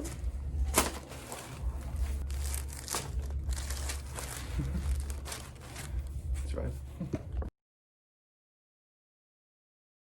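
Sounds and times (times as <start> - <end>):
crinkling on treatment table: 1.0 - 6.2.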